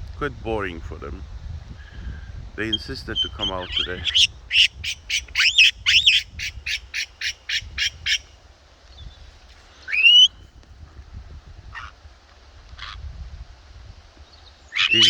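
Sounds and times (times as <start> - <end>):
bird squawking: 2.7 - 8.2, 9.9 - 10.3, 14.7 - 15.0.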